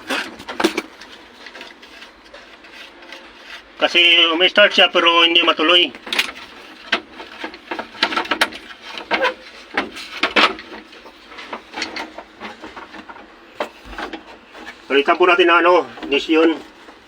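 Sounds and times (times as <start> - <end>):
tools clicking and knocking: 0.0 - 3.3, 6.0 - 14.7.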